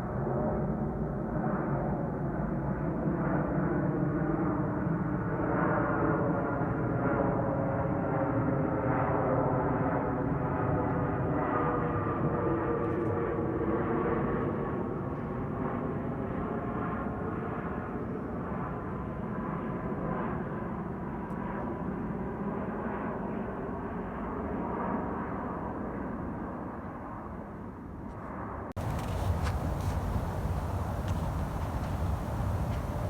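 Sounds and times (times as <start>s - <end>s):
airplane engines droning: 28.8s - 33.0s.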